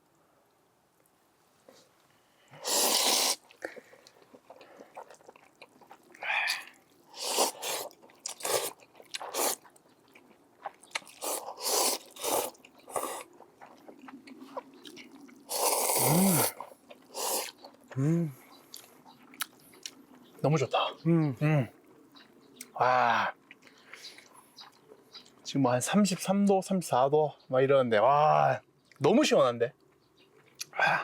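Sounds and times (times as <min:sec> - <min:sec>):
noodles being slurped: 0:02.6 - 0:09.7, 0:10.9 - 0:17.6
chewing noises: 0:02.6 - 0:20.4, 0:21.8 - 0:25.5, 0:29.8 - 0:31.0.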